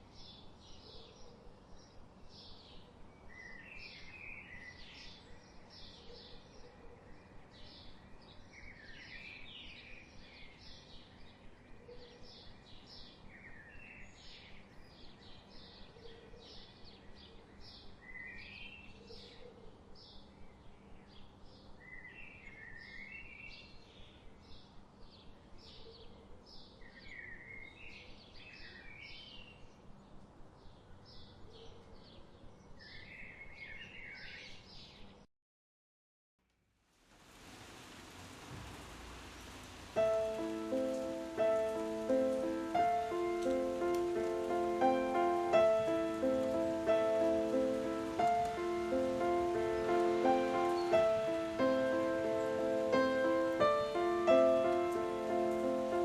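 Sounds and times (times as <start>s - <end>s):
bird chirping high: 38.6s - 56.0s.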